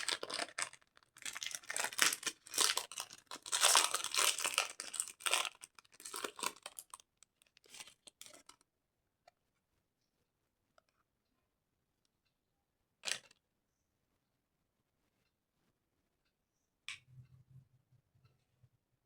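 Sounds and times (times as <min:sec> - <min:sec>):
candy wrapper crinkling: 0:00.0 - 0:08.6.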